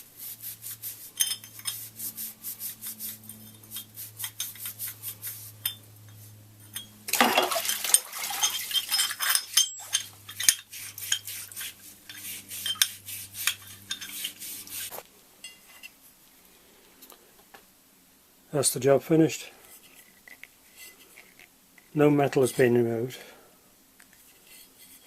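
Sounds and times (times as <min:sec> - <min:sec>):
pad scraping metal: 0:08.5 - 0:15.0, 0:24.3 - 0:25.0.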